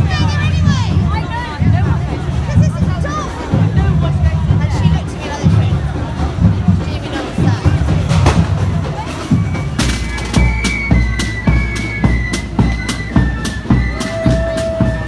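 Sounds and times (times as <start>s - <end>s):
drum beats: 0.0s - 15.0s
bagpipes playing a melody: 9.8s - 15.0s.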